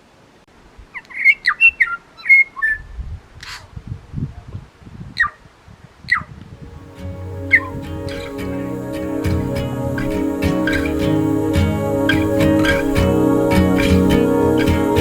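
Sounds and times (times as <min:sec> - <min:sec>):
songbird singing: 0:00.9 - 0:03.0, 0:06.1 - 0:15.0.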